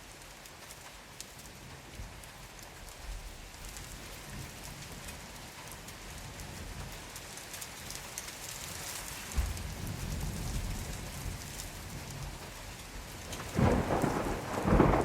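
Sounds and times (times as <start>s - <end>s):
steady rain falling: 0.0s - 15.0s
thunder rumbling: 13.2s - 15.0s.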